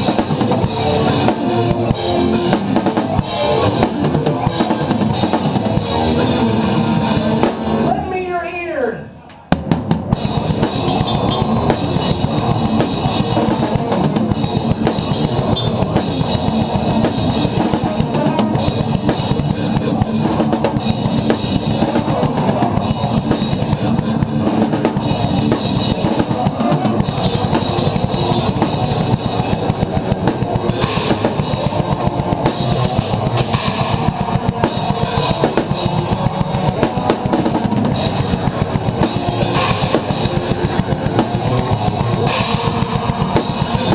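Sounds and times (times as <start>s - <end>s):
metal band music: 0.0s - 43.9s
bass drum and cymbal strikes: 10.1s - 43.9s.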